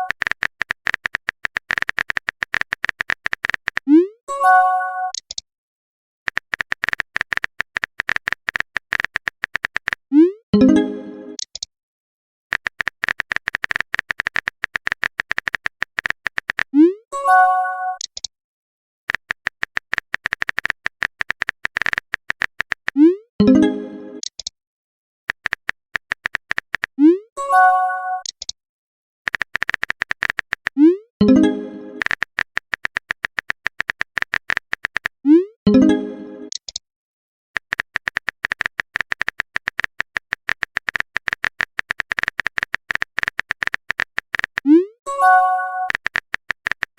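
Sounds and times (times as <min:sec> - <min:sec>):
rapid keyboard typing clicks: 0:00.0 - 0:03.9, 0:06.3 - 0:10.1, 0:12.5 - 0:16.8, 0:19.1 - 0:23.1, 0:25.3 - 0:27.0, 0:29.3 - 0:35.3, 0:36.4 - 0:36.8, 0:37.6 - 0:46.9
message chime: 0:45.1 - 0:45.9.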